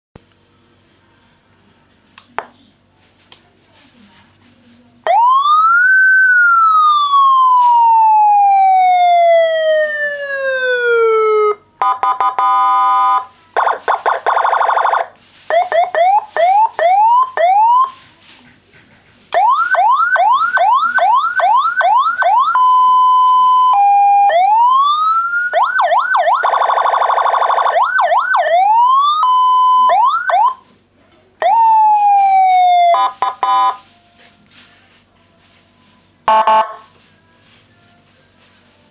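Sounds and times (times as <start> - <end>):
fast rising siren whoops: 5.1 - 11.6, 19.4 - 30.6, 31.4 - 33.7
electronic siren wail: 5.1 - 18.0, 19.4 - 30.6, 31.4 - 33.8, 36.3 - 36.8
short steady siren beeps: 11.8 - 13.3, 32.8 - 33.8, 36.3 - 36.8
buzzing horn blasts: 11.8 - 13.4, 33.0 - 33.8, 36.3 - 36.9.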